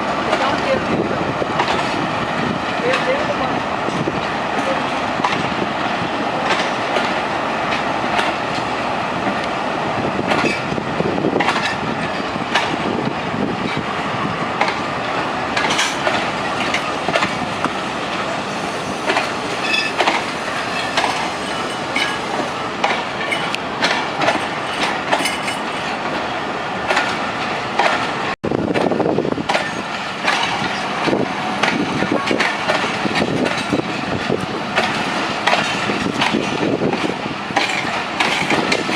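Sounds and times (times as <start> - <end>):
train rolling on track: 0.0 - 38.9
wheels clicking over rail joints: 10.2 - 10.7, 11.4 - 12.9, 14.6 - 18.2, 19.0 - 26.2, 26.8 - 38.9.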